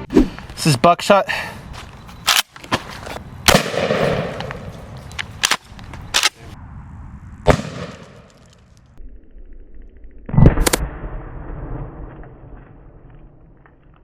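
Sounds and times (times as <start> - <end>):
shotgun shots with echo: 3.5 - 4.4, 7.5 - 8.2.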